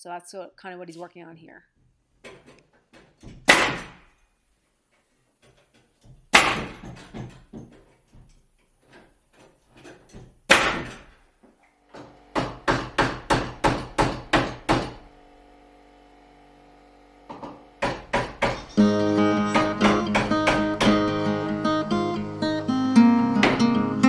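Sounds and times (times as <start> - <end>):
hammer blows on wood: 17.8 - 21.2.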